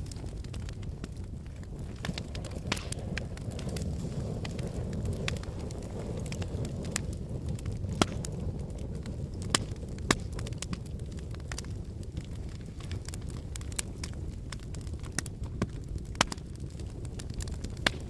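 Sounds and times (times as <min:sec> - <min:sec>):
low rumble of flames: 0:00.0 - 0:18.0
wood fire crackling: 0:00.0 - 0:18.0
loud sharp pops: 0:02.1 - 0:03.3, 0:17.8 - 0:18.0.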